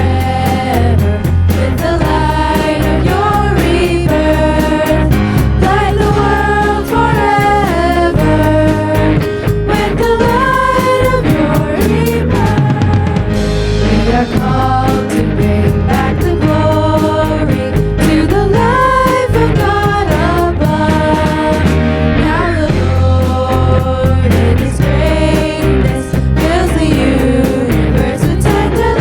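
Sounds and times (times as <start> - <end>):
band playing worship song: 0.0 - 29.0
steady drum beat: 0.0 - 29.0.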